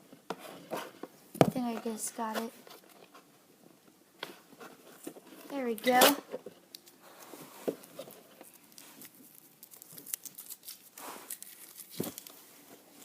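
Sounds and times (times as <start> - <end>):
packaging crinkling and rustling: 7.6 - 13.0.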